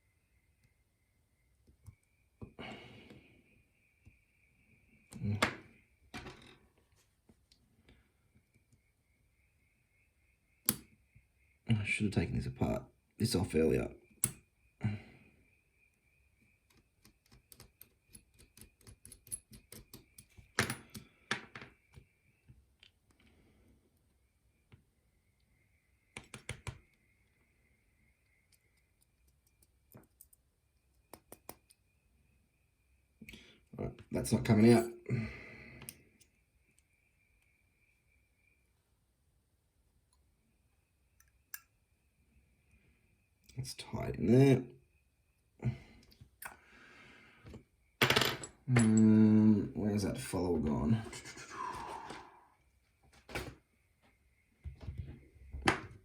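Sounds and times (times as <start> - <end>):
lock and tools clicking: 10.6 - 10.9, 14.2 - 14.4, 16.7 - 22.0, 28.5 - 31.8.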